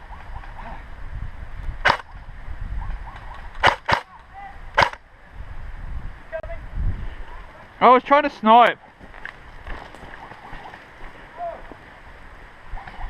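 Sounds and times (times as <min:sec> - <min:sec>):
wind rumble on microphone: 0:00.0 - 0:07.8
airsoft gun shots: 0:01.8 - 0:02.1, 0:03.6 - 0:04.1, 0:04.8 - 0:05.0.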